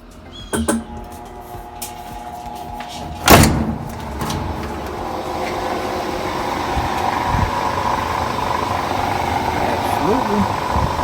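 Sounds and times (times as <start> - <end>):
washing machine drum spinning: 0.0 - 11.0
washing machine clunk: 0.4 - 1.1, 2.9 - 7.1.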